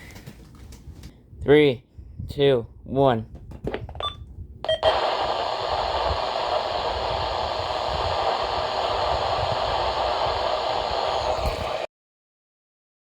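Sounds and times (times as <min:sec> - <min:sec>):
radio static hissing: 0:04.8 - 0:11.9.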